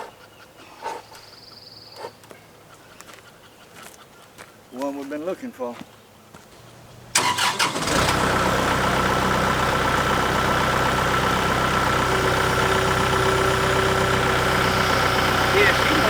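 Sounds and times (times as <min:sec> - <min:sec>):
engine idling: 0:07.1 - 0:16.0
engine starter cranking: 0:07.1 - 0:16.0.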